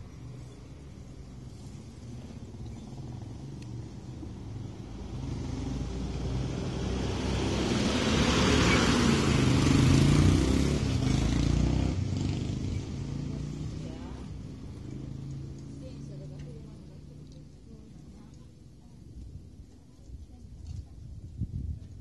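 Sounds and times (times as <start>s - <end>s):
vehicle passing by: 0.0s - 17.5s.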